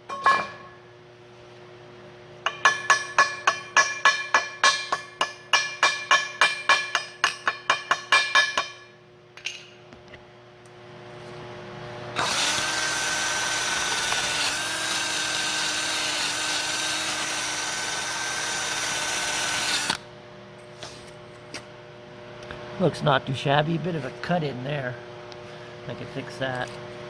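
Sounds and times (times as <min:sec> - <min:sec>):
angle grinder on steel: 0:12.2 - 0:20.0.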